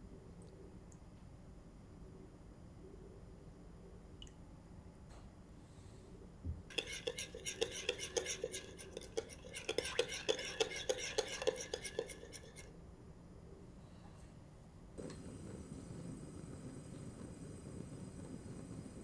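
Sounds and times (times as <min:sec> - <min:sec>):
utensil stirring and clattering in cookware: 0:06.7 - 0:12.7.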